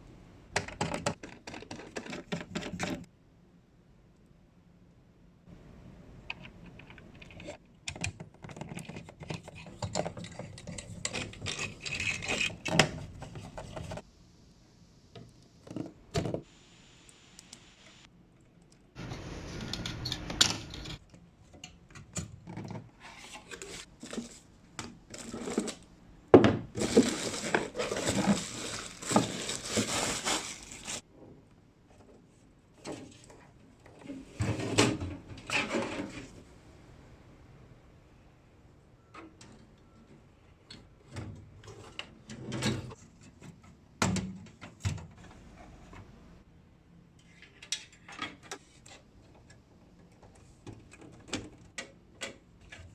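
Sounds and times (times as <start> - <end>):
computer parts clicking and scraping: 6.3 - 14.0.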